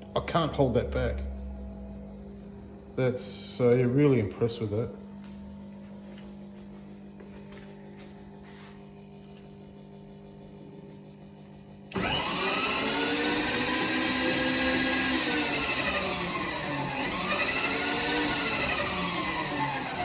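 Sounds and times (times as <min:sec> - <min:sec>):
motor humming and whining: 0:00.0 - 0:20.0.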